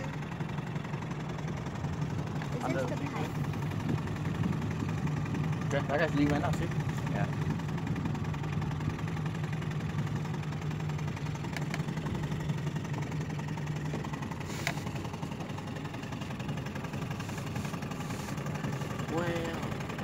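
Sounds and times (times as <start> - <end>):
boat motor idling: 0.0 - 20.0.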